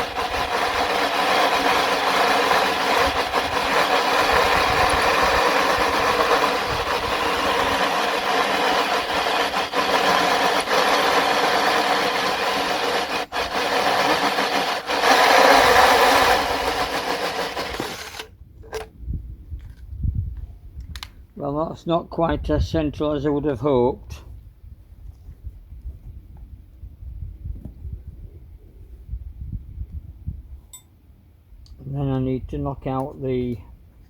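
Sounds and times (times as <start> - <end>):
power drill cutting metal: 0.0 - 18.3.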